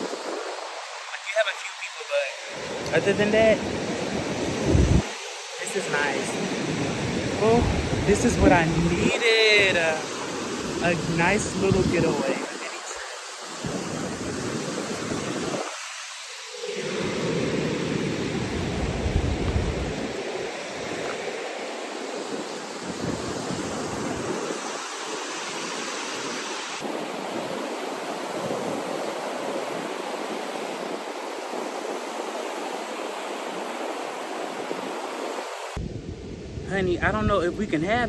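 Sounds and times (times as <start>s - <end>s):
ocean surf washing ashore: 0.0s - 38.0s
wind buffeting microphone: 2.5s - 5.2s, 6.1s - 12.6s, 13.5s - 15.9s, 16.7s - 24.7s, 35.7s - 38.0s.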